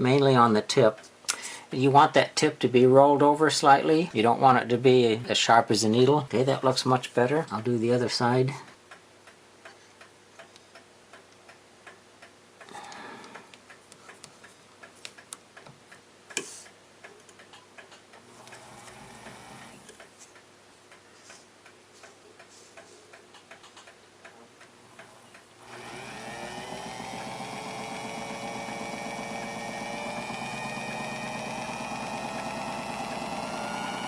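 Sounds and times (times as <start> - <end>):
clock ticking: 13.3 - 34.0
small motor humming: 18.3 - 19.9, 25.6 - 34.0.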